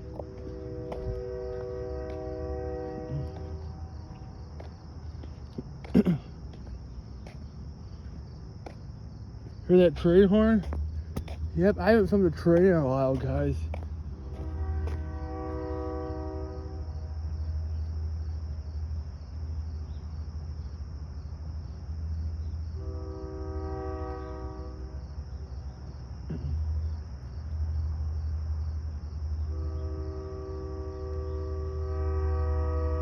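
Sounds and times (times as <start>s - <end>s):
train horn blasts: 0.0s - 4.3s, 14.0s - 17.8s, 22.8s - 25.4s, 29.4s - 33.0s
faint insect trill: 0.0s - 33.0s.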